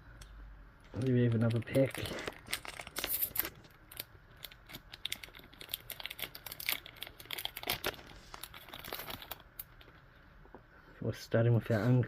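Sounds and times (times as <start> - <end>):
wrapper crinkling: 0.9 - 10.0.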